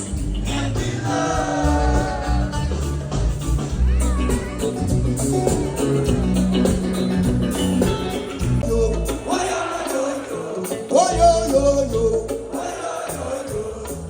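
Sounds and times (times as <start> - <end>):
live reggae band playing: 0.0 - 14.0
person singing: 8.6 - 13.9.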